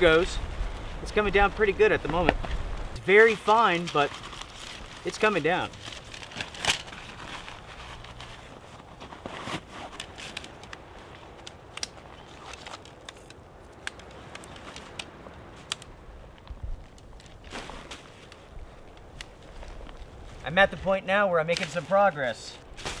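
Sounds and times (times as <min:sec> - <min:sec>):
low wind rumble: 0:00.0 - 0:09.0, 0:15.2 - 0:17.5
tent clicks and rustles: 0:00.0 - 0:23.0.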